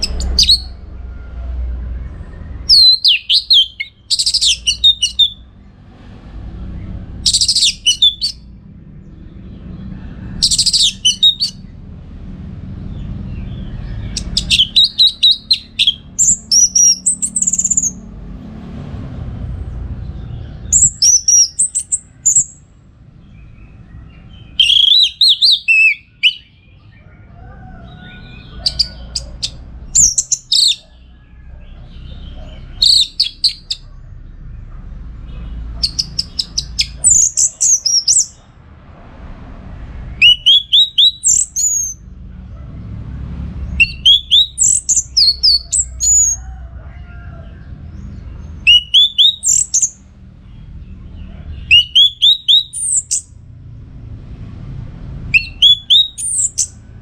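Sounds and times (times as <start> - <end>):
bird singing whistled notes: 0.0 - 0.8, 2.6 - 5.4, 7.2 - 8.4, 10.4 - 11.6, 14.0 - 18.0, 20.6 - 22.6, 23.4 - 26.7, 28.3 - 30.9, 32.7 - 33.8, 35.8 - 38.4, 40.2 - 42.0, 43.8 - 46.4, 48.6 - 50.0, 51.6 - 53.3, 55.3 - 56.8
low steady rumble: 0.0 - 57.0.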